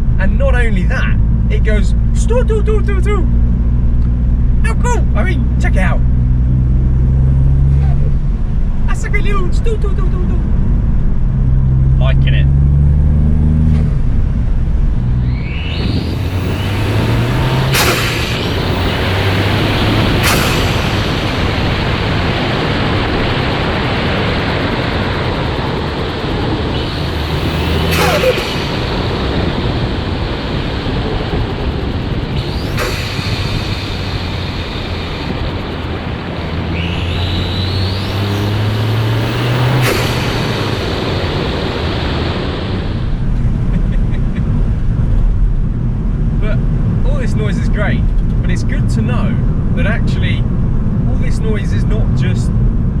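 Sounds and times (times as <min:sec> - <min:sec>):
road noise inside car: 0:00.0 - 0:53.0
turbo whistle: 0:15.2 - 0:43.4.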